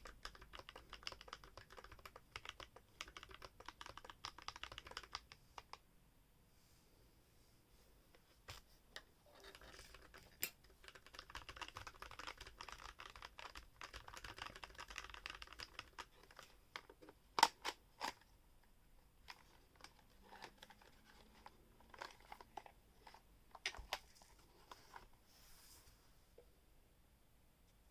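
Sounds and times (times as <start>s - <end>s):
mechanical keyboard typing: 0.0s - 5.8s, 9.5s - 16.5s.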